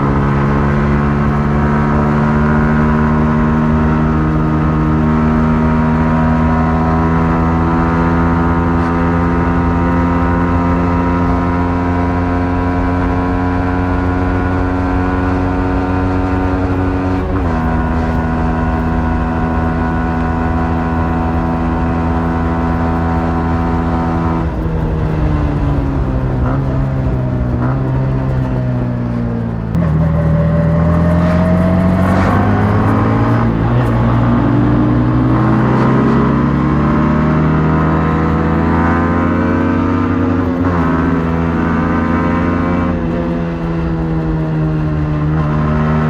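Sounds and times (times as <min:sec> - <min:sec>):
motorcycle engine running: 0:00.0 - 0:46.0.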